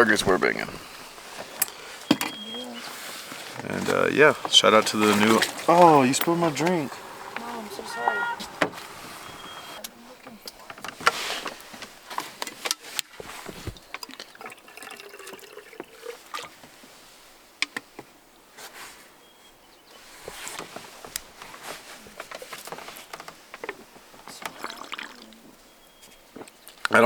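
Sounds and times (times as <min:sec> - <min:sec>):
rustling: 0:00.0 - 0:09.9.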